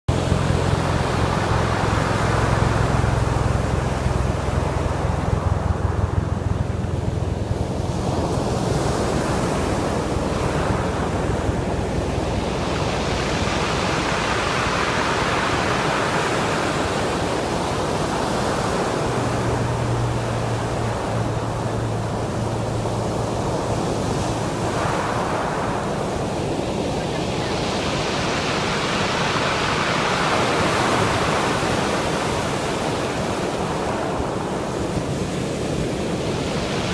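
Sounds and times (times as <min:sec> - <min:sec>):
surf washing up rocky beach: 0:00.1 - 0:36.9.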